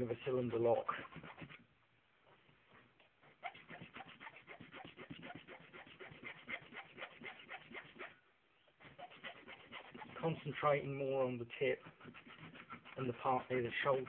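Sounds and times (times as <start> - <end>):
hand file rasping on steel: 0.8 - 1.6, 3.2 - 8.2, 8.8 - 10.7, 11.6 - 14.0.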